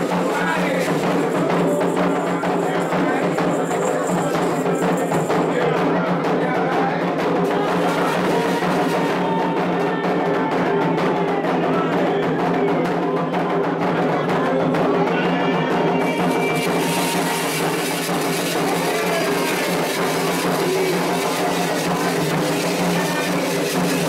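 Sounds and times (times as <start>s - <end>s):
sharp percussion tapping: 0.0s - 6.2s, 15.8s - 24.0s
hand drums playing: 0.0s - 24.0s.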